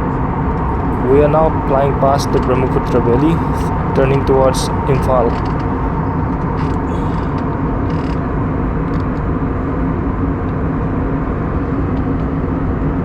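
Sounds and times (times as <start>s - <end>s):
aircraft cabin engine rumble: 0.7s - 6.0s
steady hum: 0.7s - 6.1s.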